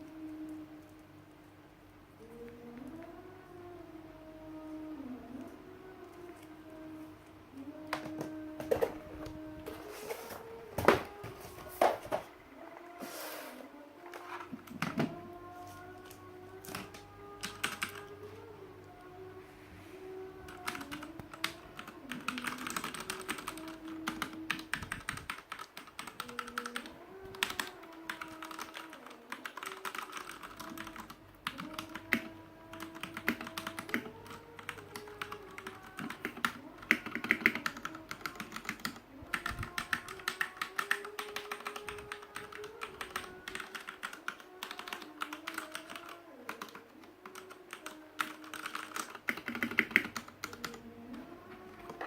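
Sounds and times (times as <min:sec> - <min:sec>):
fast mechanical keyboard typing: 0:16.0 - 0:18.2, 0:20.5 - 0:50.8.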